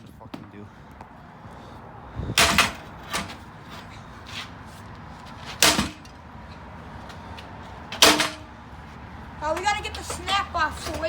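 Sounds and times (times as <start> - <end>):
heavy blows on steel frame: 2.1 - 3.8, 5.3 - 6.2, 7.8 - 8.7.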